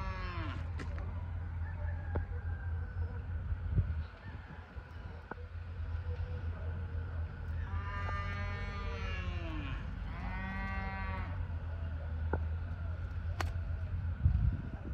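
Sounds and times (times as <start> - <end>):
long drawn-out animal calls: 0.0 - 0.7, 7.5 - 11.7
steady low rumble: 0.0 - 14.9.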